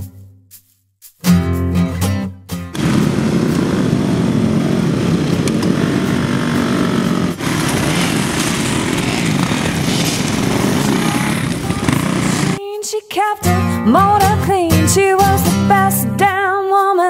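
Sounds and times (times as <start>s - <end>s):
motocross bike engine running: 2.8s - 12.6s.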